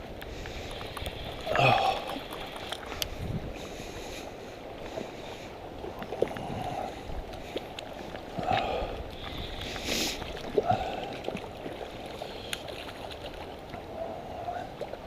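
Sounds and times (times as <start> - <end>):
stream water rushing: 0.0 - 15.0
faint clicks: 0.1 - 3.2, 12.4 - 13.8.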